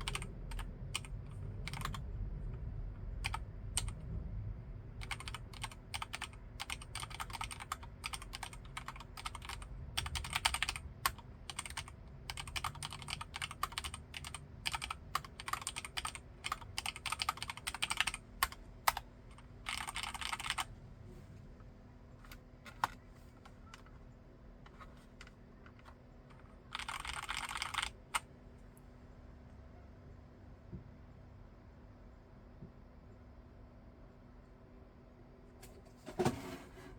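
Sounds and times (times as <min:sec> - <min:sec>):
mechanical keyboard typing: 0:00.0 - 0:02.0, 0:03.2 - 0:04.0, 0:05.0 - 0:20.7, 0:22.3 - 0:23.0, 0:25.8 - 0:28.3.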